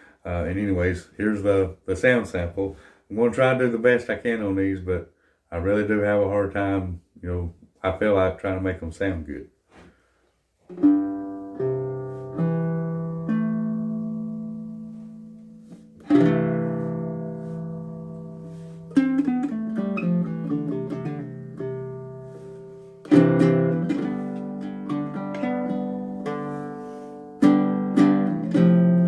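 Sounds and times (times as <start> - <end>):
ukulele picked single notes: 10.7 - 29.0
ukulele strummed chords: 10.7 - 29.0.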